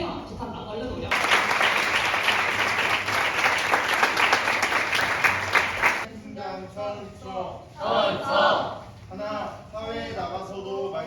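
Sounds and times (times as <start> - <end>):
audience applauding: 1.1 - 6.1.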